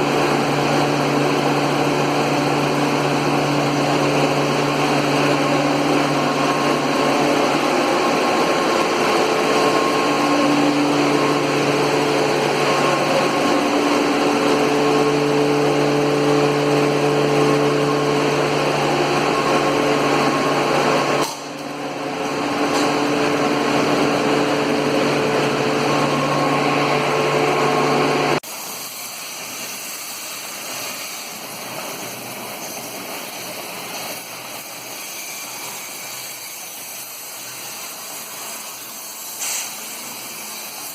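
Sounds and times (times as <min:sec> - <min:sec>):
air compressor humming: 0:00.0 - 0:30.5.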